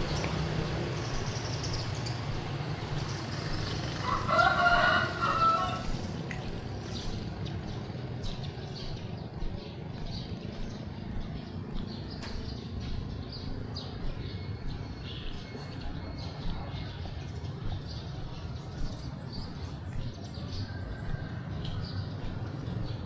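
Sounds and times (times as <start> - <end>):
outdoor background noise: 0.0 - 23.0
rooster crowing: 4.0 - 6.0.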